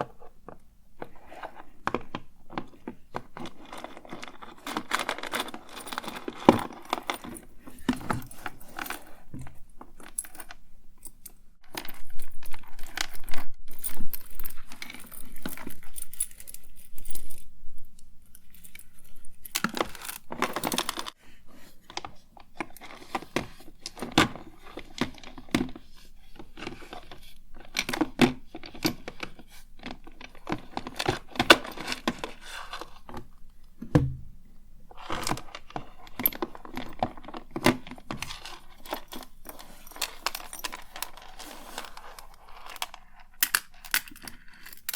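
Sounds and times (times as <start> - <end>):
small objects clicking and rattling: 2.5 - 9.2, 11.6 - 21.2, 35.0 - 44.9
rustling: 33.9 - 44.9.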